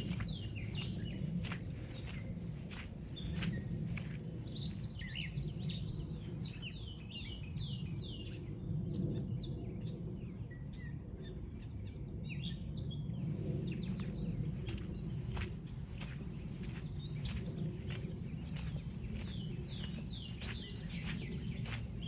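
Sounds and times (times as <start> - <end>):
footsteps on trail: 0.0 - 6.8, 13.4 - 22.0
songbirds singing: 0.0 - 10.0, 12.3 - 22.0.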